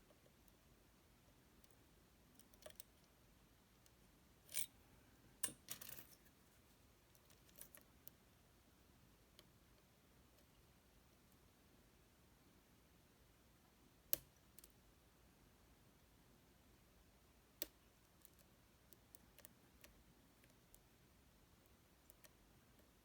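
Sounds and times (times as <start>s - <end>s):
lock-picking tools scraping: 4.5s - 4.7s.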